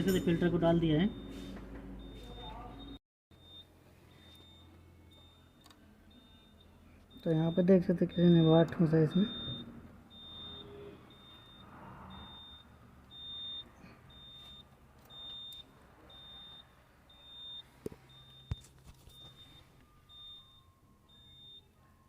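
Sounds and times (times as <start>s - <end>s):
electronic beeper beeping: 0.0s - 21.8s.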